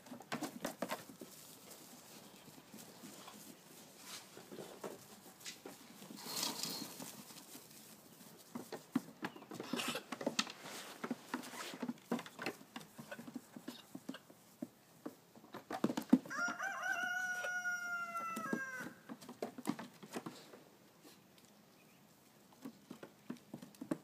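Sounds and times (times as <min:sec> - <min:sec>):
rooster crowing: 0:16.3 - 0:19.0.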